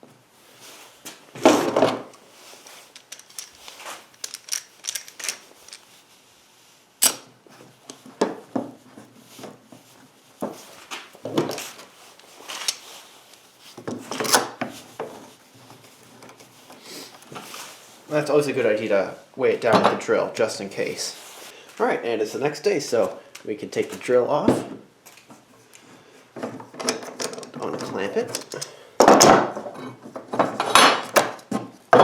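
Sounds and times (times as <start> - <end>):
wooden parts knocking and clattering: 1.4 - 2.2, 2.8 - 5.8, 26.4 - 32.0.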